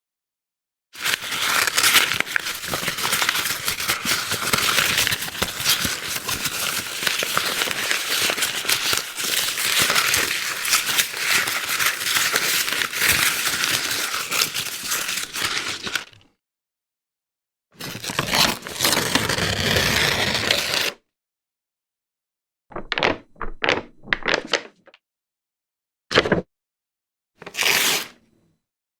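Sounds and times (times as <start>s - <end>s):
paper crumpling: 1.0s - 16.1s.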